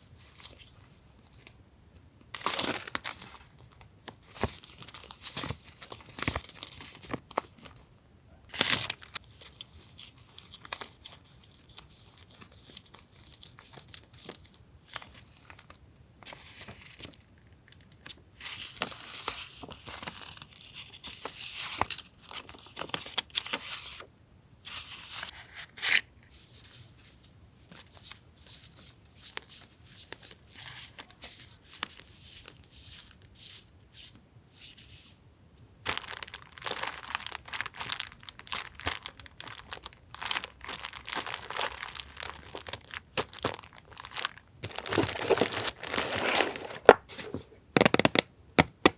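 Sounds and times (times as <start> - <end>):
paper tearing and crinkling: 40.2 - 47.4.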